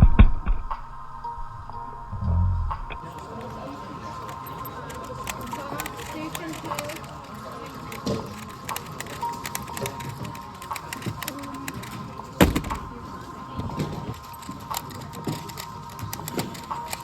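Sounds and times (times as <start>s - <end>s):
loud thump: 0.0s - 3.0s
faint voices: 1.1s - 17.0s.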